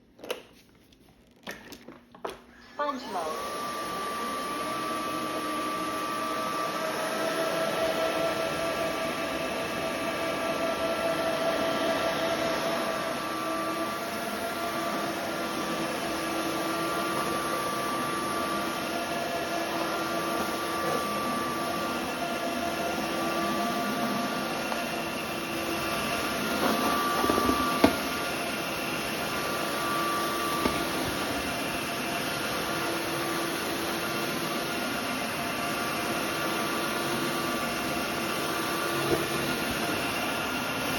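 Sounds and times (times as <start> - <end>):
floor vacuum running: 0.2 - 40.9.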